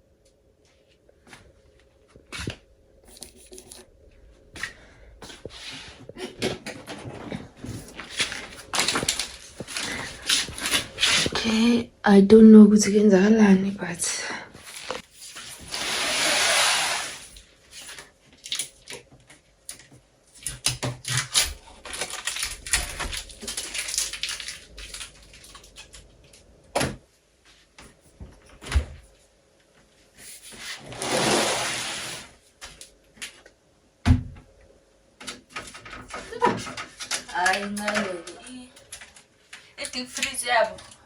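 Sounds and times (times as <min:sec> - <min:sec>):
packaging rustling and tearing: 0:06.9 - 0:11.6, 0:14.6 - 0:19.0, 0:20.4 - 0:26.5.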